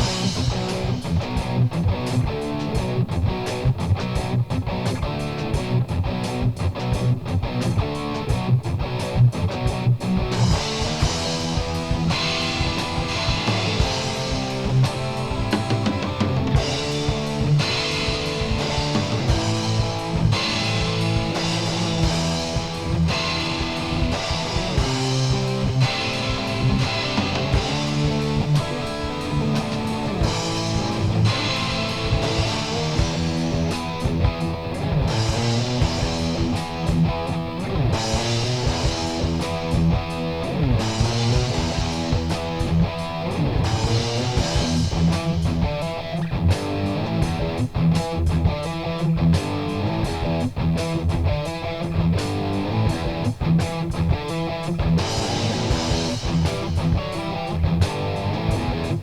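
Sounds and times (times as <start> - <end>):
drum kit beat: 0.0 - 59.0
strummed electric guitar: 0.0 - 59.0.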